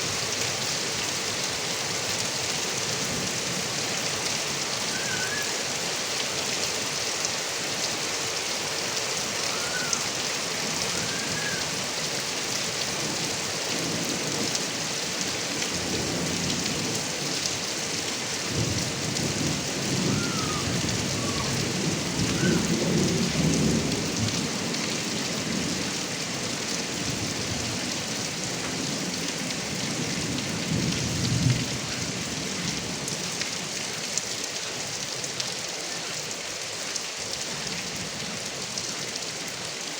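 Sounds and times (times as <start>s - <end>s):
heavy rain falling: 0.0s - 39.9s
thunder rumbling: 18.5s - 24.6s.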